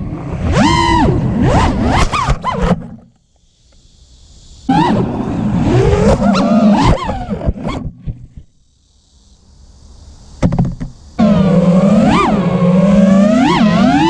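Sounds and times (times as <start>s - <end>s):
drone propellers whining: 0.0s - 3.2s, 4.6s - 8.0s, 11.2s - 14.0s.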